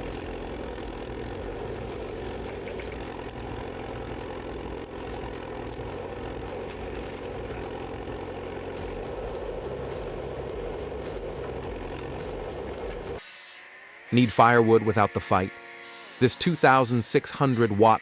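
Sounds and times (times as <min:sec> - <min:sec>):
heavy machine engine running: 0:00.0 - 0:13.2.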